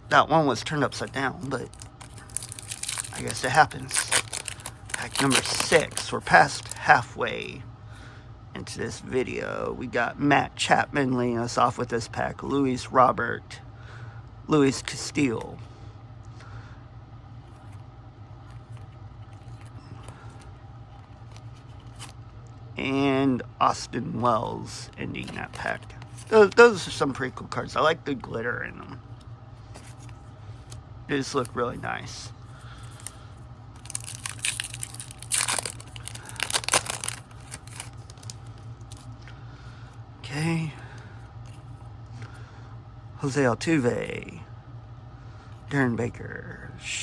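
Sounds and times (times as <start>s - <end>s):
low background hum: 0.0s - 47.0s
trading cards scraping and ticking: 0.8s - 6.8s, 17.4s - 22.6s, 25.1s - 26.9s, 32.5s - 39.4s
plastic wrapper torn and crinkled: 1.5s - 6.8s, 33.8s - 39.1s.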